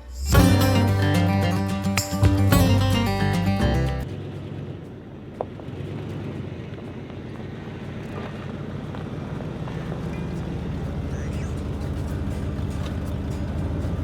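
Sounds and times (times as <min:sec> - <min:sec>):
guitar music: 0:00.0 - 0:04.1
tractor engine rumble: 0:00.0 - 0:14.0.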